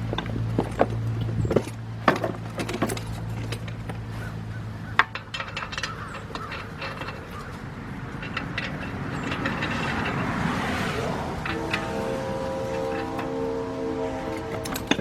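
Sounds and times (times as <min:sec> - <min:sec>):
metal tools clinking and knocking: 0:00.0 - 0:13.6, 0:14.2 - 0:15.0
low hum: 0:08.2 - 0:15.0.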